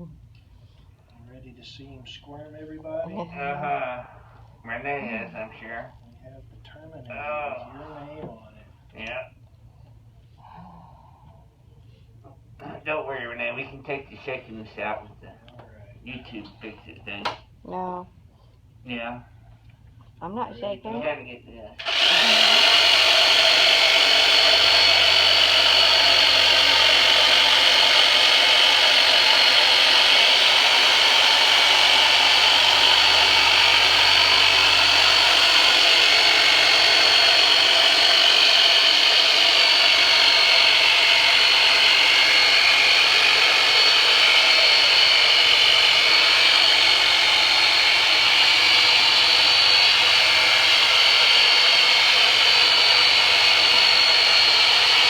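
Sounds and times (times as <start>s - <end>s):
electric massager motor buzzing: 21.8s - 55.0s.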